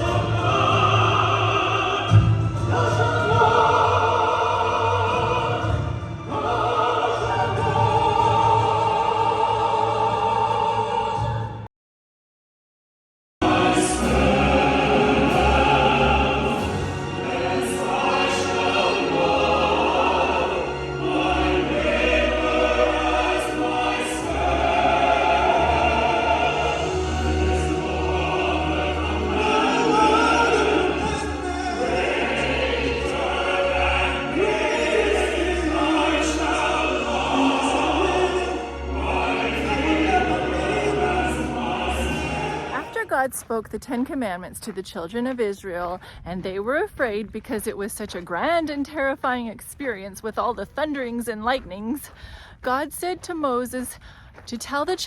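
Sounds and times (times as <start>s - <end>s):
singers in opera-like voices: 0.0s - 11.7s, 13.4s - 43.6s.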